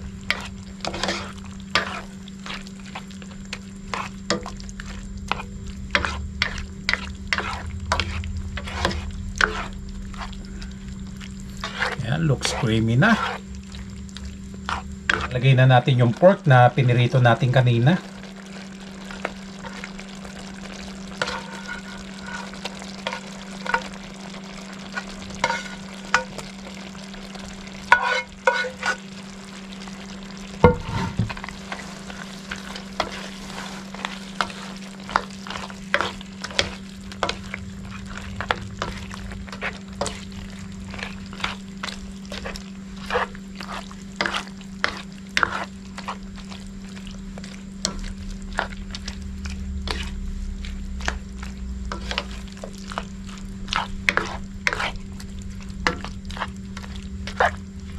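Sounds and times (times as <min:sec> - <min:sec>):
utensil clinking and scraping pot: 0:00.0 - 0:10.4, 0:11.5 - 0:13.5, 0:14.6 - 0:15.5, 0:21.1 - 0:24.0, 0:24.9 - 0:26.6, 0:27.8 - 0:29.1, 0:30.6 - 0:46.2, 0:53.7 - 0:55.0
steady low hum: 0:00.0 - 0:57.9
knock on pot: 0:30.6 - 0:31.3.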